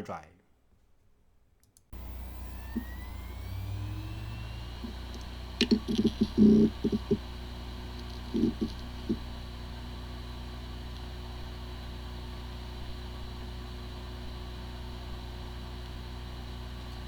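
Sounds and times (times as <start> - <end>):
hard drive motor whine: 1.9 - 17.0
steady low hum: 1.9 - 17.0
hard drive head clicks: 2.0 - 9.2.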